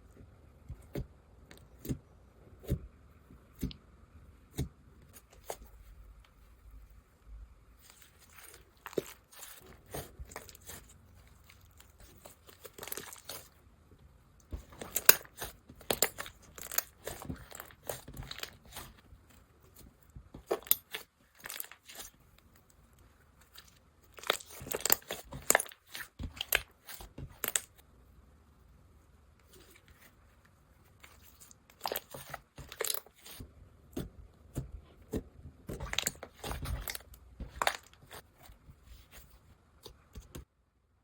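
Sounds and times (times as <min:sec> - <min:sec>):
slime crackling and popping: 0:14.6 - 0:19.0, 0:24.1 - 0:27.8, 0:31.7 - 0:33.4.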